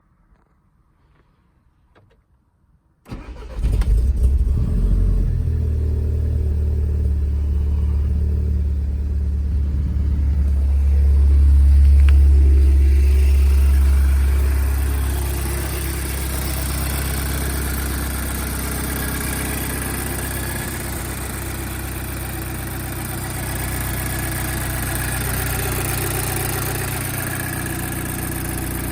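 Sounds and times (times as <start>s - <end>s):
engine cranking and starting: 3.1s - 28.9s
engine high cold idle: 3.1s - 28.9s.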